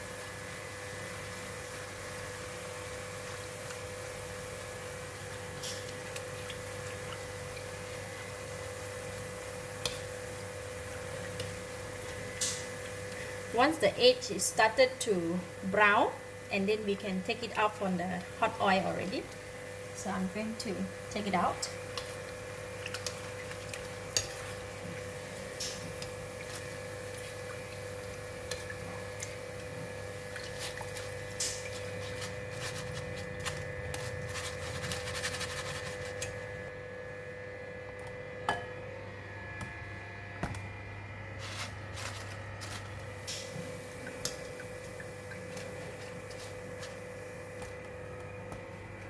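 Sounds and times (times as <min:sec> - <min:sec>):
food sizzling in hot oil: 0:00.0 - 0:36.7
metal strainer scraping wok: 0:31.5 - 0:36.3.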